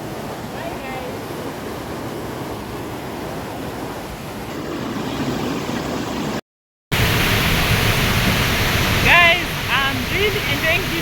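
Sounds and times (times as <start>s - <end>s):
waterfall rushing: 6.9s - 11.0s.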